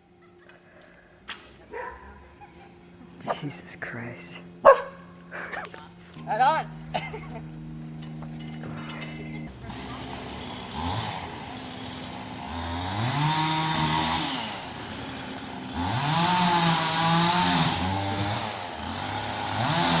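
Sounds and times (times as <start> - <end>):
chainsaw idling and revving: 5.3 - 20.0.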